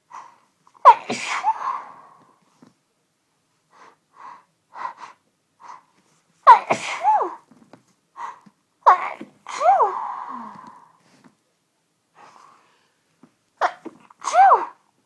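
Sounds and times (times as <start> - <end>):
woman sneezing: 0.8 - 1.8, 6.5 - 7.4, 8.9 - 10.0, 13.6 - 14.8.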